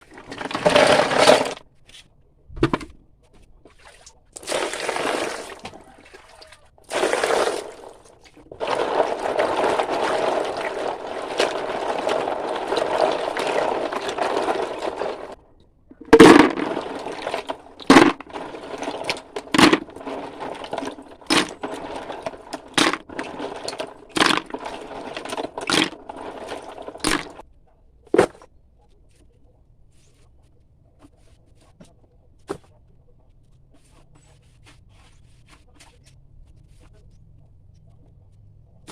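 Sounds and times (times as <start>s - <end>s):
water pouring and splashing: 3.6s - 27.4s.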